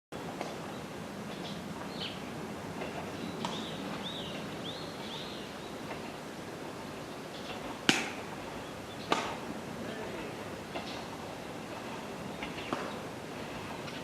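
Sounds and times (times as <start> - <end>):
outdoor background noise: 0.1 - 14.0
bird chirping: 0.2 - 6.1, 8.5 - 9.3.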